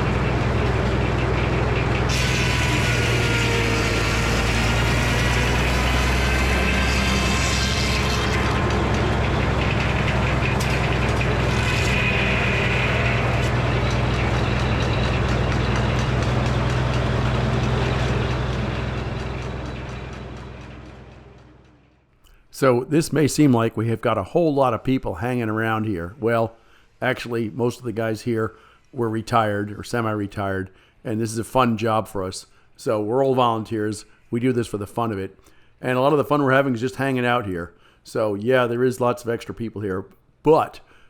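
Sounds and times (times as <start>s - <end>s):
circular saw blade whine: 0.0s - 21.8s
sawmill engine drone: 0.0s - 22.0s.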